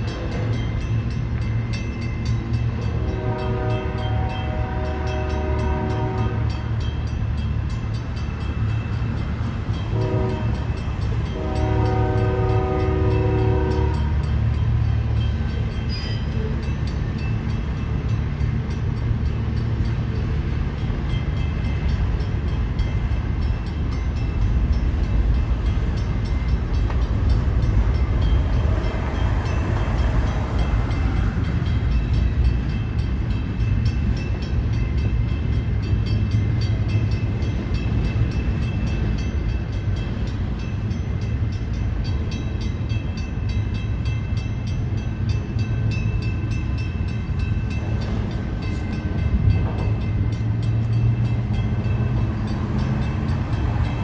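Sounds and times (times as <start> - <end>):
train rumbling by: 0.0 - 54.0
train horn blasts: 2.9 - 6.7, 9.8 - 14.3.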